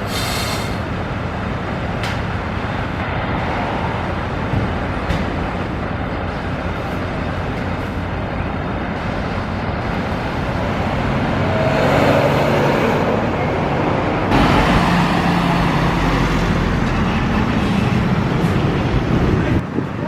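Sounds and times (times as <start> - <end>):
fire truck engine running: 0.0 - 11.6, 12.2 - 20.0.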